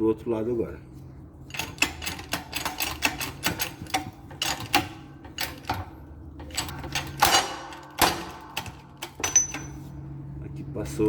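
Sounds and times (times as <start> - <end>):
metallic clicks and knocks: 1.5 - 9.9.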